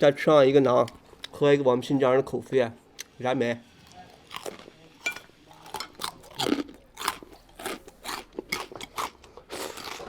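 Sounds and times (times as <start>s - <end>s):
crunchy bread being chewed: 3.8s - 10.0s.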